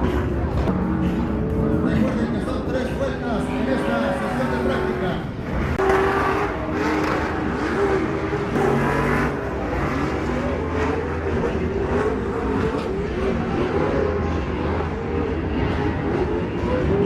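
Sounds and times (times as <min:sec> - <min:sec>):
race vehicle engines revving: 0:00.0 - 0:17.0.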